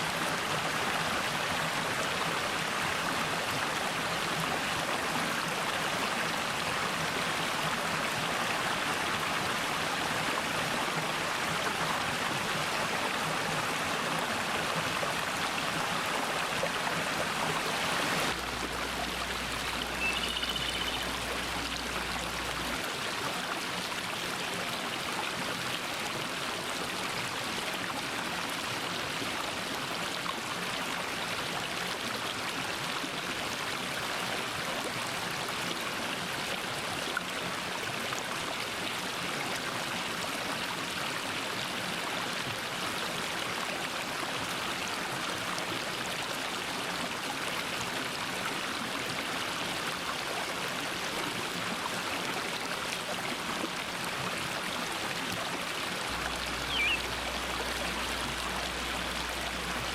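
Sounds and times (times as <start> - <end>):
stream running over rocks: 0.0 - 59.9
faint bird chirp: 19.8 - 21.3, 56.5 - 57.2.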